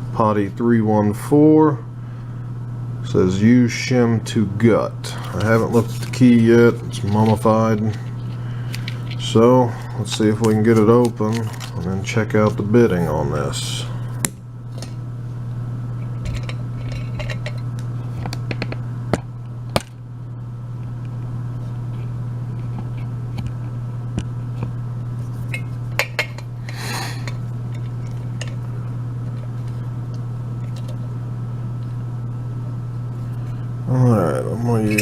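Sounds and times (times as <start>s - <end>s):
steady low hum: 0.0s - 35.0s.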